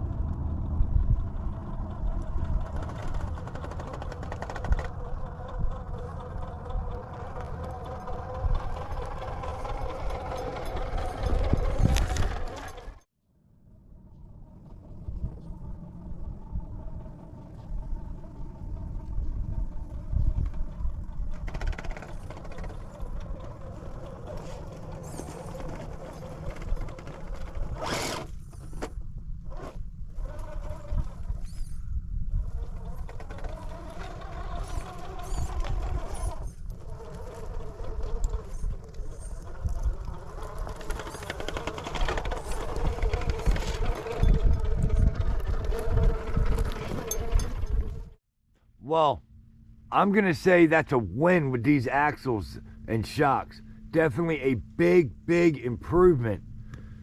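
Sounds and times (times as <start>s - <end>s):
low rumble: 0.0s - 4.2s
electric motor whining: 32.4s - 48.1s.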